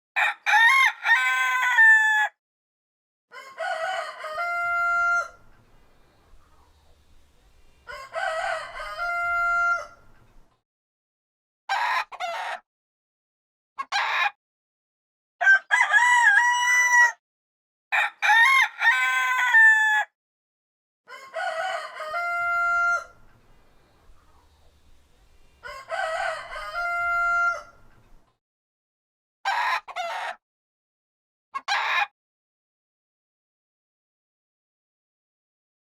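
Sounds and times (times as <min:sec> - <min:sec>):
rooster crowing: 0:00.2 - 0:02.4, 0:03.3 - 0:05.6, 0:07.8 - 0:10.2, 0:15.4 - 0:17.2, 0:18.0 - 0:20.1, 0:21.1 - 0:23.4, 0:25.6 - 0:28.0.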